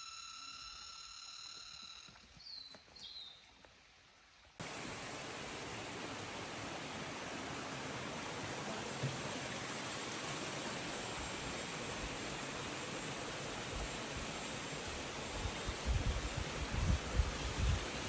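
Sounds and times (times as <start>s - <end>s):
rushing mountain water: 3.8s - 18.0s.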